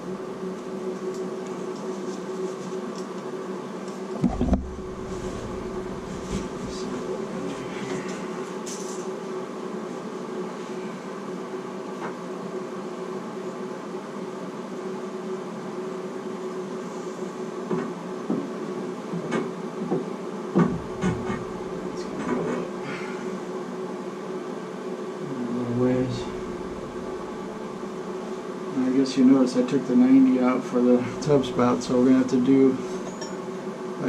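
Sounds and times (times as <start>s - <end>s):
steady mechanical hum: 0.0s - 34.0s
sharp clicks and knocks: 19.2s - 21.5s.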